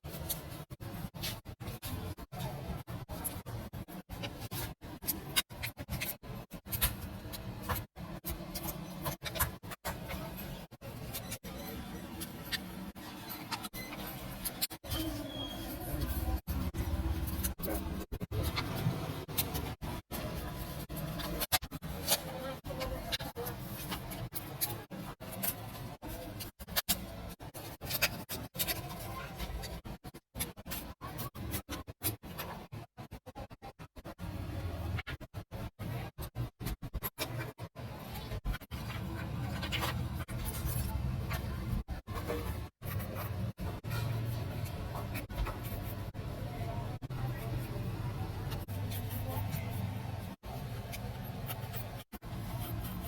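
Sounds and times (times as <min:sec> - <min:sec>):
light scratching: 0:34.2 - 0:53.0
hand tools scraping on a phone: 0:47.0 - 0:53.0.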